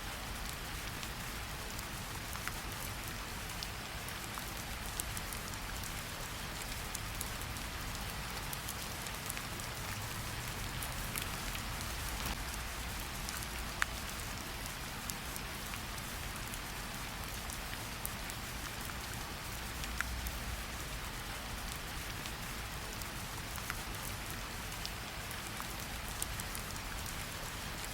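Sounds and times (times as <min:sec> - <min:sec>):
steady rain falling: 0:00.0 - 0:27.9.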